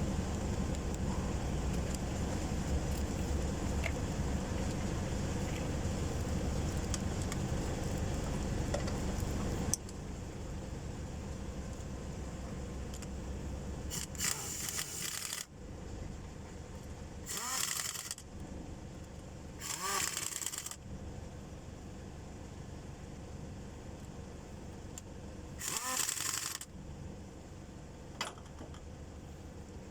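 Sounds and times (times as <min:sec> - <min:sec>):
steady mechanical hum: 0:00.0 - 0:29.9
ratchet wrench ratcheting: 0:13.9 - 0:15.5, 0:17.3 - 0:18.2, 0:19.6 - 0:20.8, 0:25.6 - 0:26.7.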